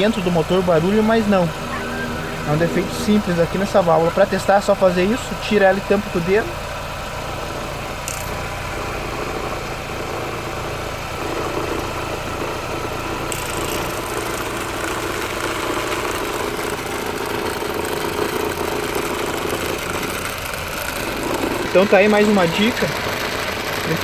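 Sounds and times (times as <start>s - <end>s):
steady humming tone: 0.0s - 7.9s
car engine idling: 0.0s - 24.0s.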